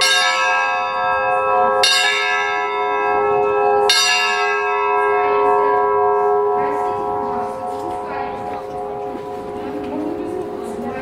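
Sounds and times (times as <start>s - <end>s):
church bells ringing: 0.0s - 11.0s
hum of large bells: 0.0s - 11.0s.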